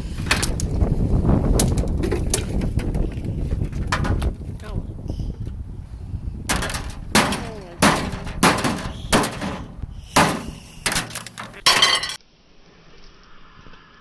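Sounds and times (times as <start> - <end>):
glass and metal breaking: 10.3 - 12.2.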